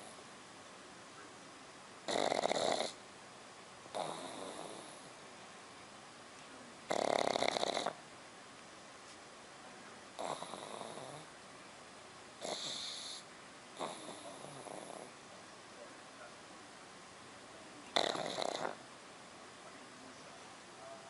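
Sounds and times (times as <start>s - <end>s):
puppy snoring: 2.0s - 3.0s, 3.9s - 5.2s, 6.9s - 8.0s, 10.2s - 11.3s, 12.4s - 15.2s, 17.9s - 18.8s.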